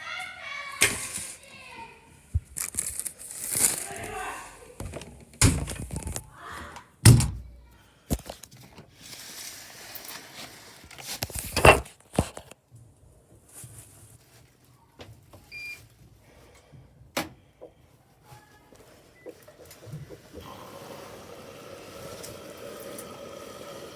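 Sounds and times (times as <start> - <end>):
rustling: 0.1 - 6.4, 13.4 - 16.5.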